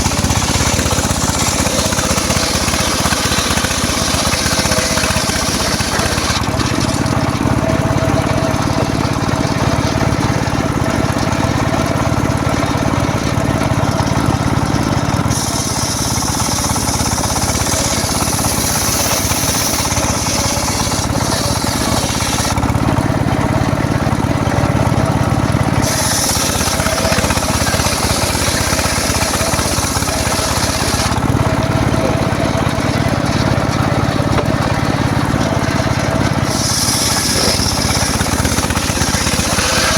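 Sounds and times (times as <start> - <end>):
circular saw cutting wood: 0.0 - 39.9
high hiss of saw blade: 15.3 - 22.5, 25.8 - 31.1, 36.5 - 39.9.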